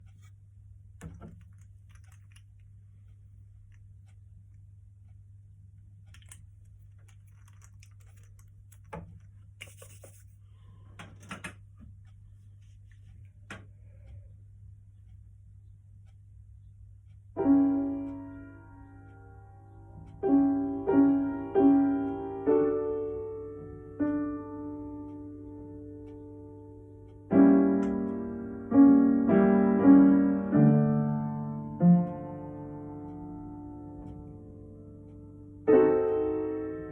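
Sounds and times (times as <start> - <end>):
low electrical hum: 0.0 - 36.9
small clicks and knocks: 1.0 - 4.2, 6.0 - 10.3
piano chords ringing: 17.4 - 36.9.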